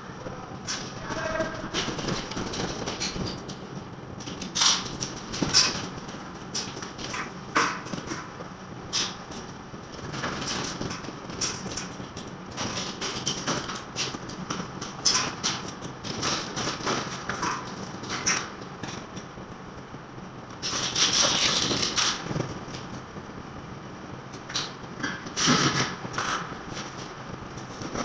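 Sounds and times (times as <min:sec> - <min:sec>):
hand tools knocking and clattering: 0:01.1 - 0:03.8.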